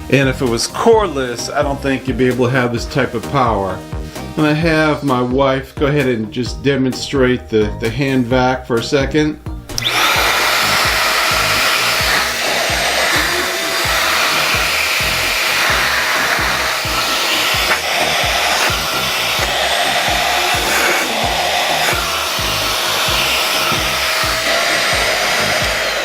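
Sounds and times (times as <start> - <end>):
vacuum motor whine: 9.7 - 26.0.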